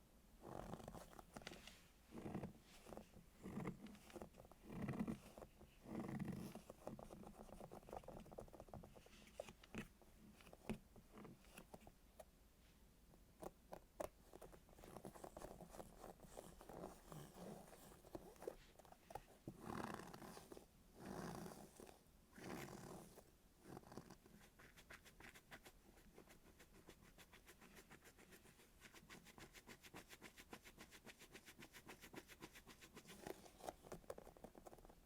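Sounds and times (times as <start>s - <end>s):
soft squishing of toys: 13.1s - 20.7s, 32.8s - 35.0s.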